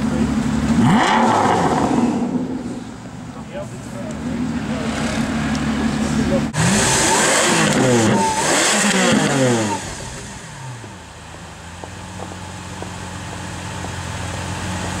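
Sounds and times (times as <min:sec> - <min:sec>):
sports car engine revving: 0:00.0 - 0:15.0
low engine hum: 0:07.6 - 0:15.0.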